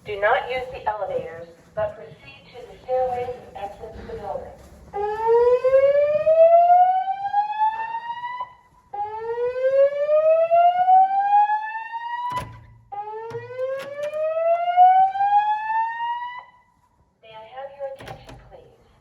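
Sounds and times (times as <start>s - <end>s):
fire alarm whoop tone: 5.0s - 16.7s.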